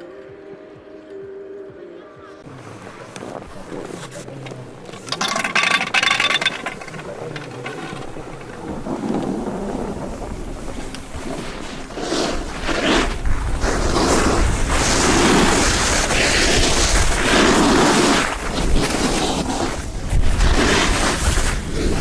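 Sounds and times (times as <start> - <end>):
skis swooshing on snow: 2.4 - 22.0
wind rumble on microphone: 6.7 - 22.0.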